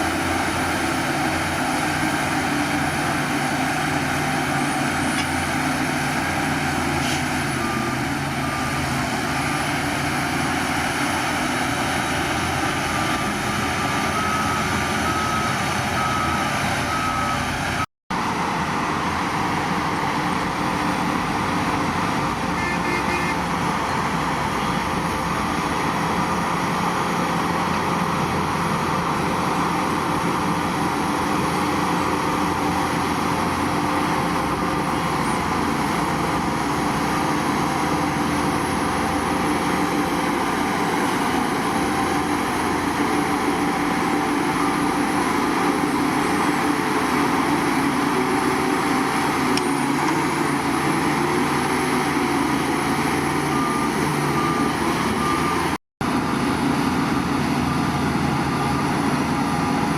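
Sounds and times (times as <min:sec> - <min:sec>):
heavy machinery running: 0:00.0 - 0:59.9
reversing alarm beeping: 0:00.2 - 0:17.9, 0:28.9 - 0:56.5.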